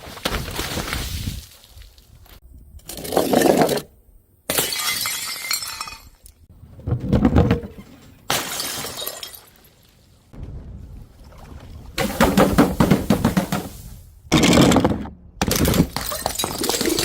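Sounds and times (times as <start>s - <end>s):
glass bottles shattering: 4.5s - 6.3s, 8.3s - 9.7s, 15.5s - 17.0s.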